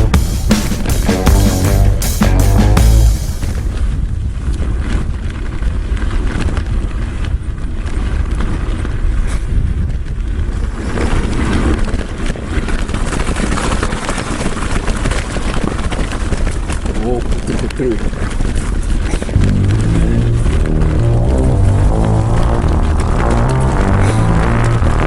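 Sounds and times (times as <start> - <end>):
bike tyre rumble: 18.3 - 25.0.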